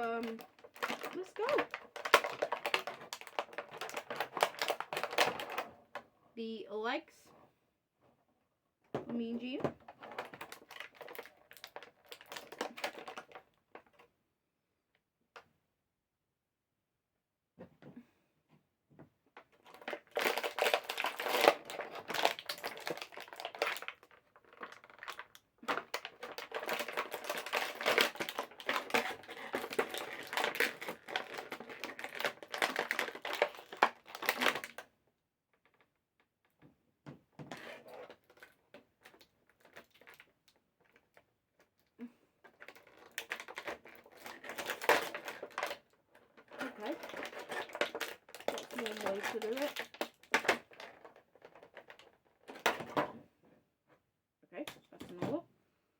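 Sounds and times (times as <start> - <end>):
plastic packaging crinkling: 0.0 - 5.7, 10.0 - 14.0, 19.6 - 34.9, 37.6 - 41.2, 42.5 - 53.0.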